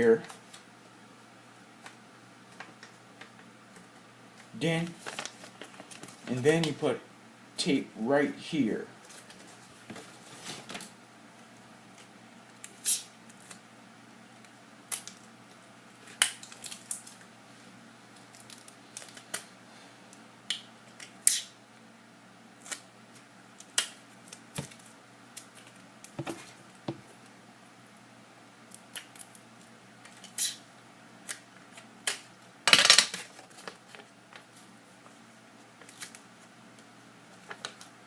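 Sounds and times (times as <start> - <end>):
tape and paper crinkling: 4.4 - 6.7, 9.0 - 10.9, 14.9 - 17.3, 18.2 - 19.5, 31.2 - 35.2, 35.8 - 37.9.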